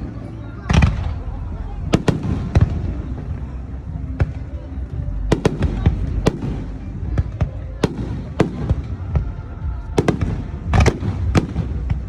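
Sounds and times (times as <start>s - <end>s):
fireworks bangs: 0.7s - 3.5s, 5.3s - 12.0s.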